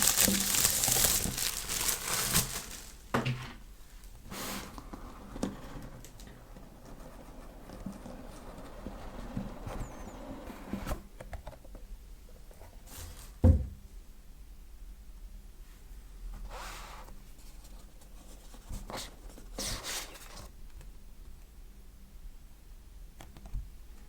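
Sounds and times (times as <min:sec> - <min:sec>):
packaging rustling: 0:00.0 - 0:03.2.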